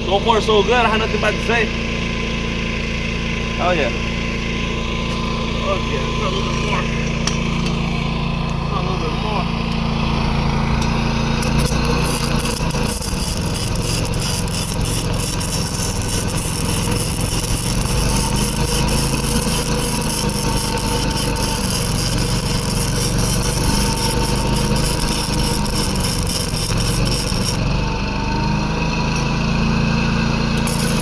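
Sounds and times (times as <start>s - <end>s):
generator humming: 0.0s - 31.0s
welding arc crackling and hissing: 10.8s - 27.6s, 30.6s - 31.0s.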